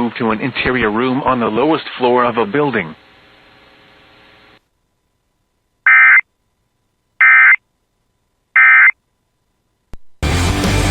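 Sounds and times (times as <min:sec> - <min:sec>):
harsh digital data tone bursts: 0:05.9 - 0:06.2, 0:07.2 - 0:07.6, 0:08.6 - 0:09.0.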